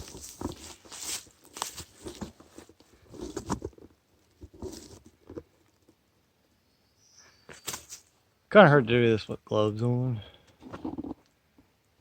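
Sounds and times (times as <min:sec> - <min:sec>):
footsteps crunching through dry leaves: 0:00.0 - 0:02.4.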